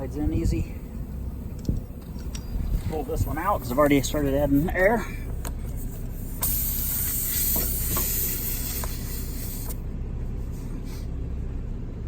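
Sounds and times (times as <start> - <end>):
steady low hum: 0.0 - 12.0
air hissing from tire puncture: 4.4 - 9.8, 10.4 - 11.2.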